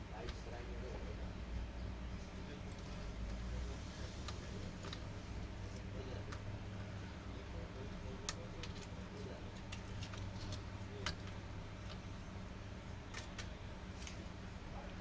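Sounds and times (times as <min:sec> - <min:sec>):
steady low hum: 0:00.0 - 0:15.0
light clicks and taps: 0:04.2 - 0:06.5, 0:08.2 - 0:12.1.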